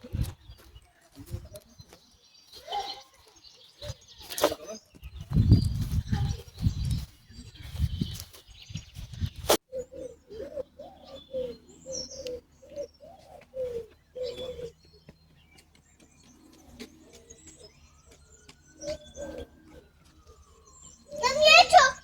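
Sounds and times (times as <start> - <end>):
small songbirds chirping: 0.0 - 22.0
dove cooing: 9.7 - 15.0, 16.6 - 21.9.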